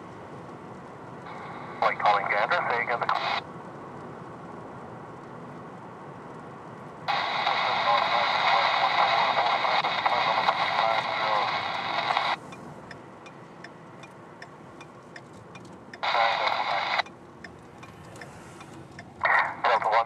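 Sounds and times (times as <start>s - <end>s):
radio static: 1.3s - 3.4s, 7.1s - 12.4s, 16.0s - 17.1s, 19.2s - 20.0s
faint voice over radio: 1.8s - 3.4s, 7.1s - 12.4s, 16.0s - 17.0s, 19.2s - 20.0s.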